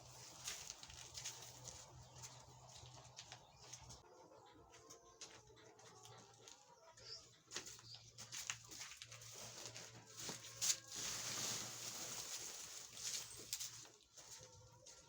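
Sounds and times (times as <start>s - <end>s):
rustling or scraping noise: 0.0s - 3.4s, 7.6s - 14.5s
chickens calling softly: 0.0s - 15.0s.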